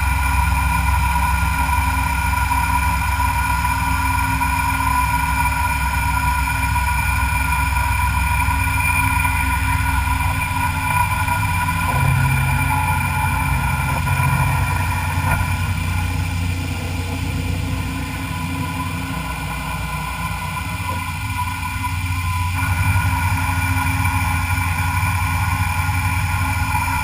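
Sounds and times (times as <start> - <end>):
milling machine machining metal: 7.2 - 27.0.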